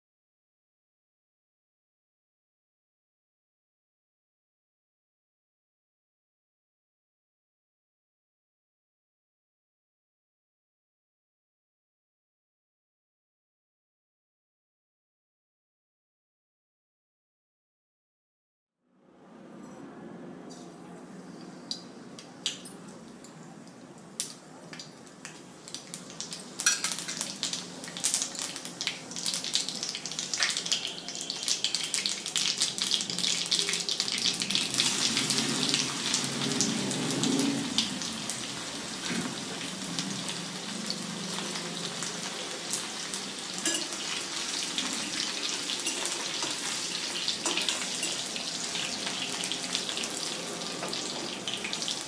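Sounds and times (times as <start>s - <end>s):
food sizzling in hot oil: 24.2s - 52.0s.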